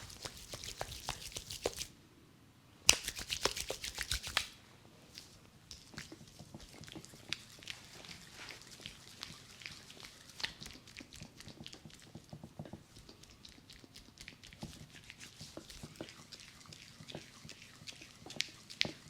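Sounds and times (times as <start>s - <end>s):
hands rubbing scalp and hair: 0.0s - 1.9s, 2.9s - 4.5s, 5.1s - 10.7s.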